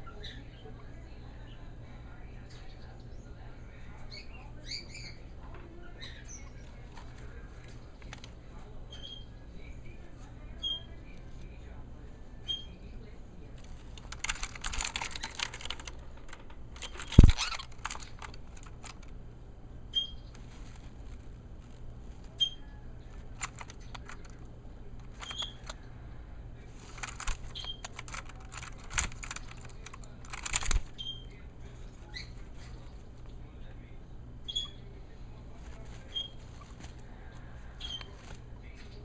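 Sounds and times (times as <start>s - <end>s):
clicking and scratching: 6.4s - 8.4s, 13.5s - 19.2s, 20.0s - 25.8s, 26.7s - 31.2s, 35.6s - 39.0s
small animal chirping squeaks: 12.5s - 12.8s, 17.1s - 17.8s, 19.9s - 20.3s, 22.4s - 22.8s, 34.5s - 34.9s.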